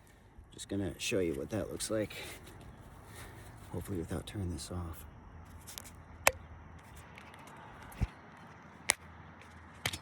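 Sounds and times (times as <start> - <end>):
faint background noise: 0.0 - 10.0.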